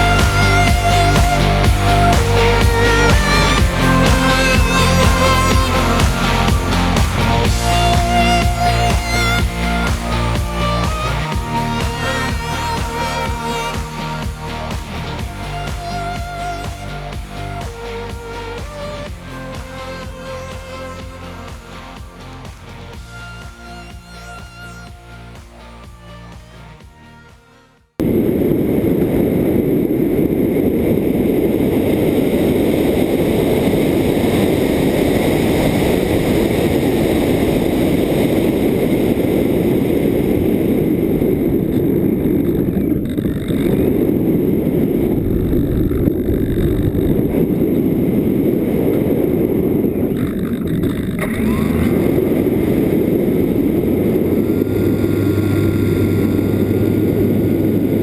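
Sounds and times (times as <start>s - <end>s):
propeller noise: 0.0s - 27.0s, 28.0s - 58.0s
faint steady whine: 0.0s - 58.0s
wind rush: 28.0s - 58.0s.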